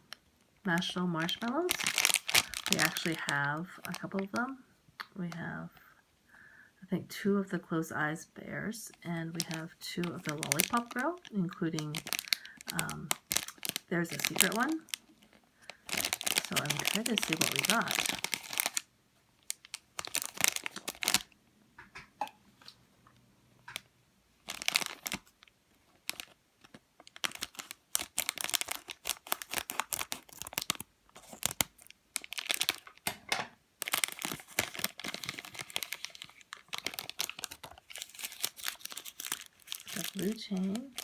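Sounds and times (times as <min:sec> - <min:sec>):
packaging torn and crinkled: 0:00.8 - 0:04.4, 0:09.3 - 0:21.3, 0:24.4 - 0:33.2, 0:33.8 - 0:41.0.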